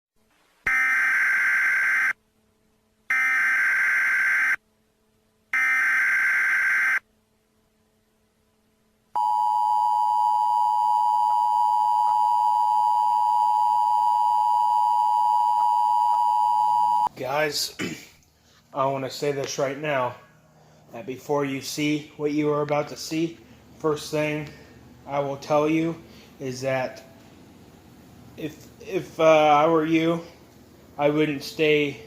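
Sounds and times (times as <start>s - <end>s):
continuous beep tone: 9.2s - 17.1s.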